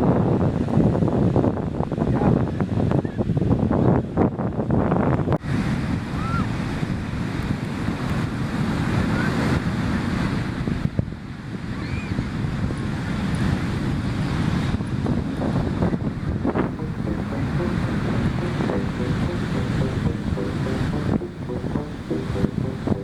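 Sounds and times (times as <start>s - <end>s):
wind on microphone: 0.0s - 8.2s
ocean surf: 16.6s - 23.0s.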